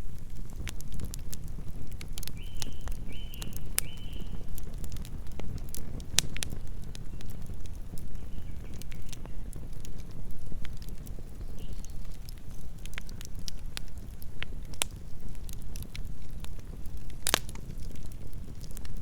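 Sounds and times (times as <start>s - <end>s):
campfire flames rumbling: 0.0s - 19.0s
wood crackling and popping: 0.0s - 19.0s.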